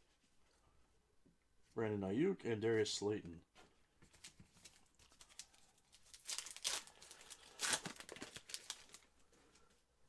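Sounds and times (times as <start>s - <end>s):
foil wrapper crinkling and tearing: 4.1s - 9.2s.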